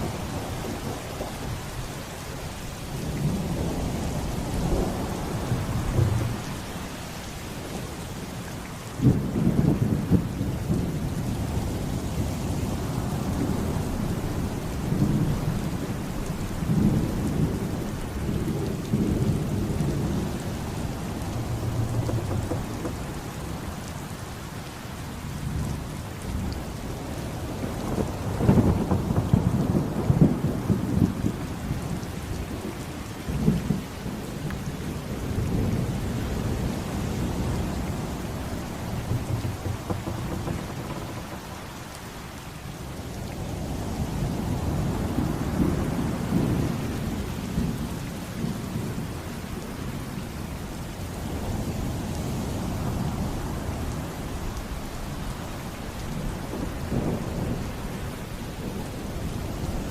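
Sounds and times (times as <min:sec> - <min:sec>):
rain falling steadily: 0:00.0 - 0:59.9
rolling thunder: 0:02.9 - 0:08.0, 0:09.0 - 0:24.5, 0:25.4 - 0:32.0, 0:33.3 - 0:47.9, 0:51.2 - 0:55.4.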